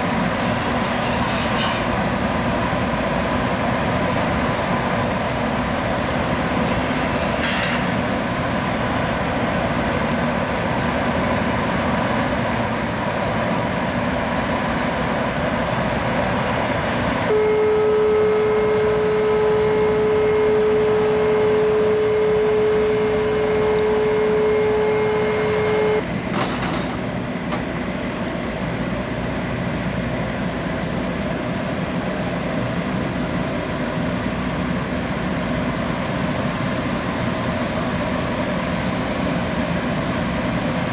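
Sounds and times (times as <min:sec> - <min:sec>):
long horn blast: 0:17.3 - 0:26.0.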